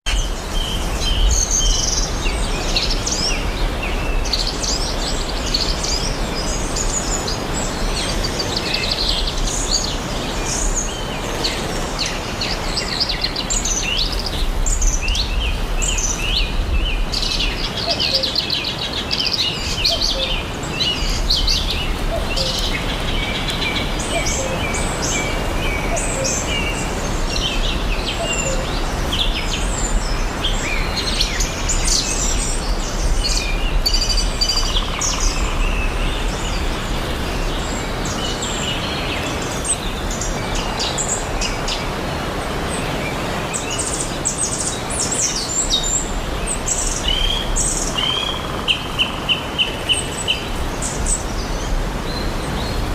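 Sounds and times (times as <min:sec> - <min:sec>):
small birds chirping: 0:00.1 - 0:52.9.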